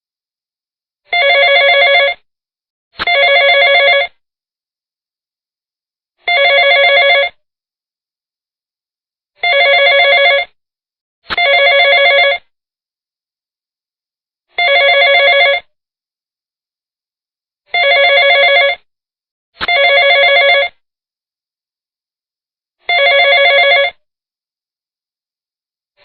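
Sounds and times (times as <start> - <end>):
telephone ringing: 1.1 - 2.3, 3.0 - 4.2, 6.2 - 7.4, 9.4 - 10.6, 11.3 - 12.5, 14.6 - 15.7, 17.7 - 18.9, 19.6 - 20.8, 22.9 - 24.0.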